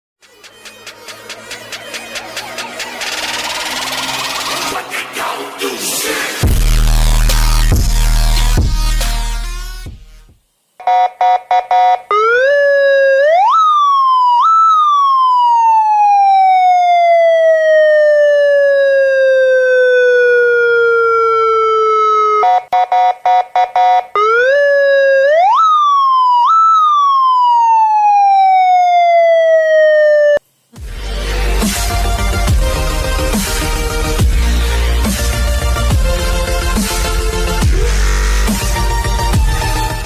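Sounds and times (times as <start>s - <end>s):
electronic police siren: 0.3s - 4.9s, 10.8s - 30.4s.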